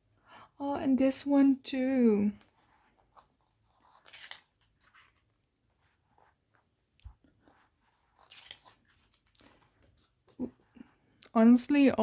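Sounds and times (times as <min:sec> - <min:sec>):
paper pages rustling: 0:02.3 - 0:11.2
page turning clicks: 0:03.8 - 0:05.3, 0:08.2 - 0:10.0.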